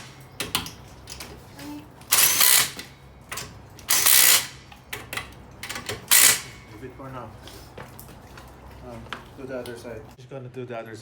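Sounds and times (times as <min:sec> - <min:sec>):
drill spinning lug nuts: 0:00.0 - 0:06.8.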